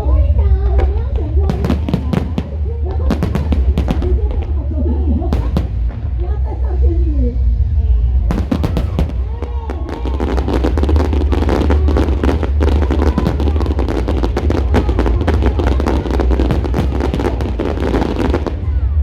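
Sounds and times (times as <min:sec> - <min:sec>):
firecrackers crackling: 0:00.7 - 0:06.6, 0:08.3 - 0:19.0.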